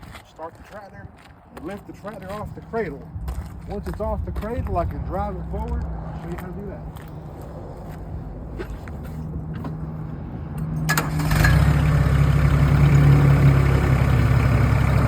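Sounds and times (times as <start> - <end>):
tractor engine idling: 9.1 - 15.0.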